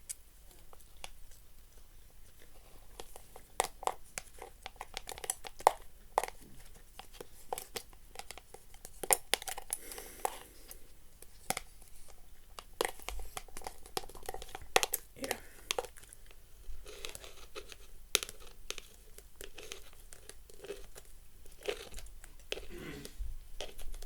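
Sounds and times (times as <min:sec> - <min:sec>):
crinkling: 0:00.0 - 0:24.0.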